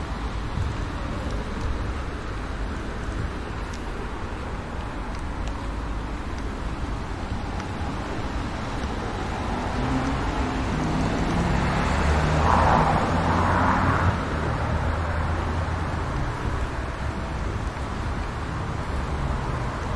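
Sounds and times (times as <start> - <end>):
street traffic: 0.0 - 19.9
vehicle passing close by: 9.3 - 16.0.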